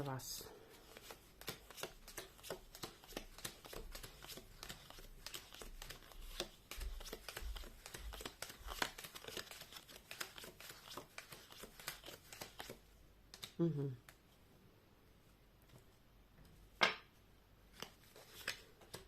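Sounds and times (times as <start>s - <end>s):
cards being shuffled: 0.8s - 14.2s, 17.7s - 19.0s.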